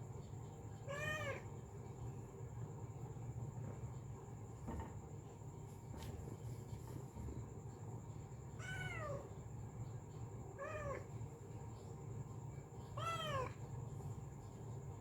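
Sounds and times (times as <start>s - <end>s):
low background hum: 0.0s - 15.0s
cat meowing: 8.6s - 9.2s, 13.0s - 13.6s.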